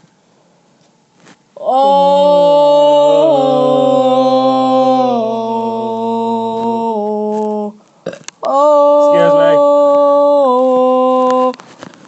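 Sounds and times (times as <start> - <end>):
voices singing a held chord: 1.6 - 7.8, 8.5 - 11.5.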